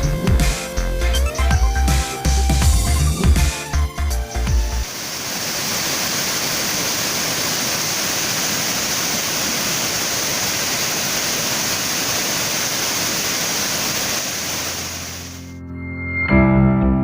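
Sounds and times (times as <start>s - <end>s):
waterfall rushing: 4.8s - 15.5s.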